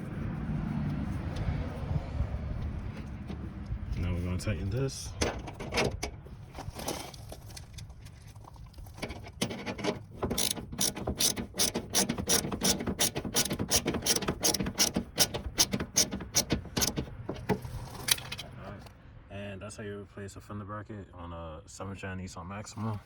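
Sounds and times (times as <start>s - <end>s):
handling noises: 0.0s - 18.9s
hand ratchet clicking: 9.0s - 18.4s.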